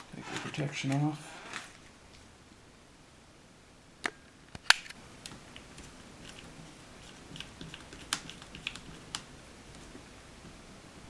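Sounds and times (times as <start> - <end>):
plastic parts clicking and tapping: 4.0 - 9.9.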